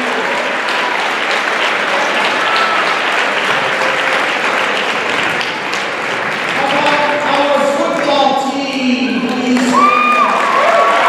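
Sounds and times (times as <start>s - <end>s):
audience applauding: 0.0s - 11.0s
audience cheers: 9.4s - 11.0s.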